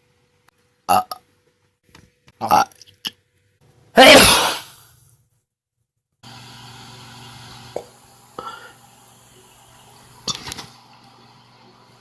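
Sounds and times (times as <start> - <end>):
loud burp: 0.9 - 1.2.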